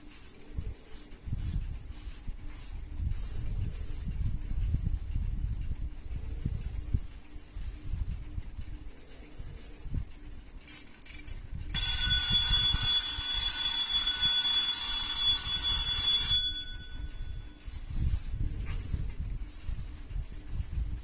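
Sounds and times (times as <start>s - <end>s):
alarm clock bell ringing: 10.7s - 17.6s.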